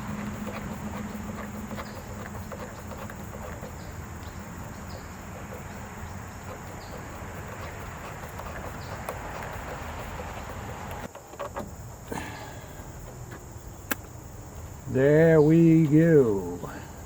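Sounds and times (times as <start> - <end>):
hand tools clicking and tapping: 0.0 - 12.3
crickets droning: 0.0 - 17.0.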